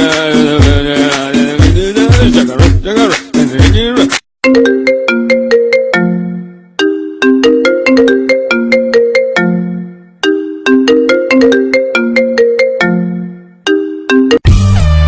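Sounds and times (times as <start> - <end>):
music with bass and guitar: 0.0 - 4.1, 14.4 - 15.0
phone ringtone melody: 4.4 - 14.5.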